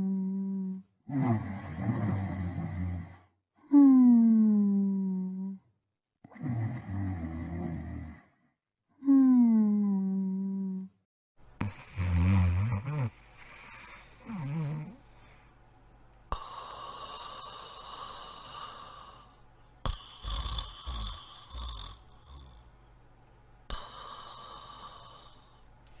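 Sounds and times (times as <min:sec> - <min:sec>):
cartoon dogs snoring: 0:00.0 - 0:03.3, 0:06.2 - 0:08.5, 0:11.6 - 0:15.4, 0:16.3 - 0:22.7, 0:23.7 - 0:25.6.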